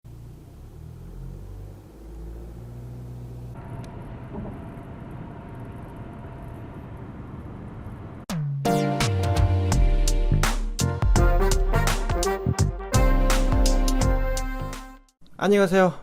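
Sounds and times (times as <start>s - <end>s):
diesel engine running: 0.0s - 8.2s.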